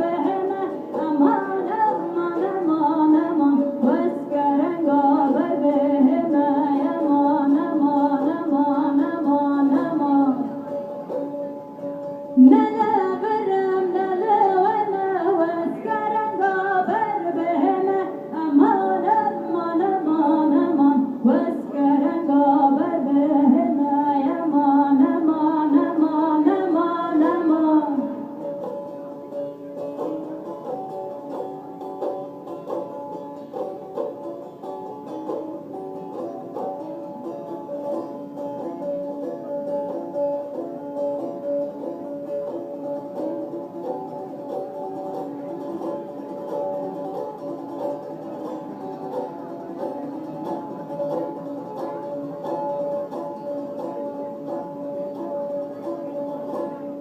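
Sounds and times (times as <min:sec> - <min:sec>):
woman singing: 0:00.0 - 0:10.6, 0:12.4 - 0:28.2
plucked strings: 0:00.0 - 0:57.0.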